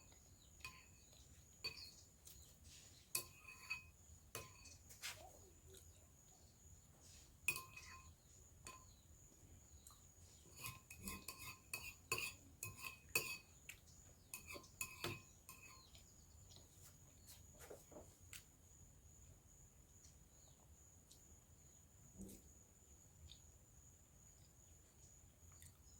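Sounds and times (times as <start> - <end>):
metal spoon clinking on a dish: 0.0 - 2.5, 3.1 - 4.9, 7.4 - 9.1, 10.4 - 16.0.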